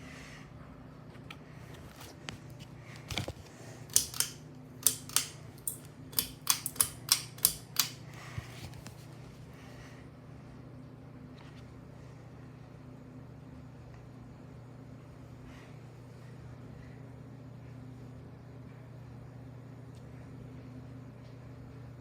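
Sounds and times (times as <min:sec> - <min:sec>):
ceiling fan motor hum: 0:00.0 - 0:22.0
sharp clicks: 0:03.9 - 0:08.0.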